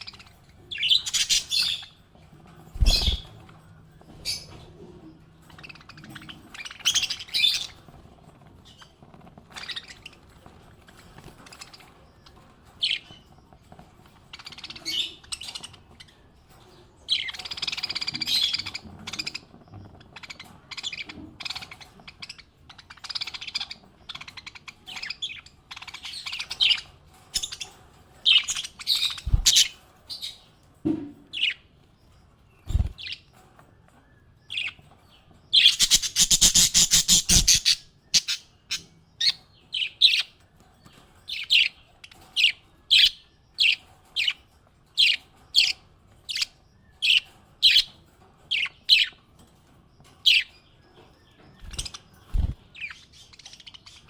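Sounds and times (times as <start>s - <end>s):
parrots chirping: 0.0s - 2.0s, 2.8s - 4.8s, 5.4s - 13.4s, 14.0s - 16.1s, 17.1s - 30.5s, 35.6s - 40.4s, 51.6s - 54.0s.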